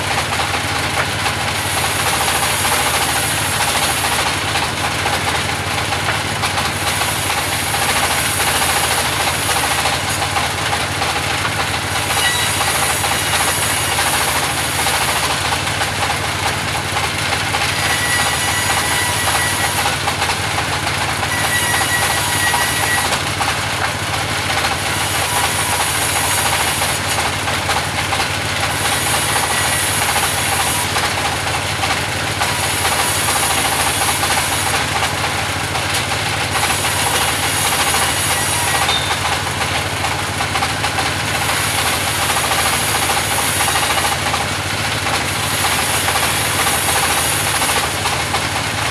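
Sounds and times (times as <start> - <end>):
band sawmill sawing timber: 0.0 - 48.9.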